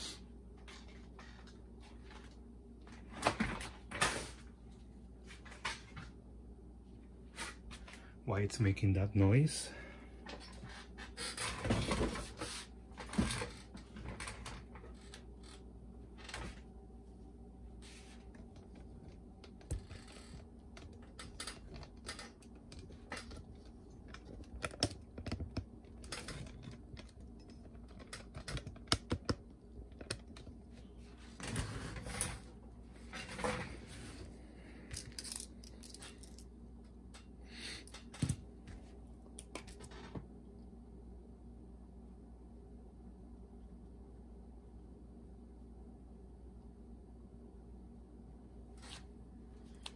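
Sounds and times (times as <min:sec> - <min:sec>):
hand tools clicking and tapping: 0:19.5 - 0:30.5.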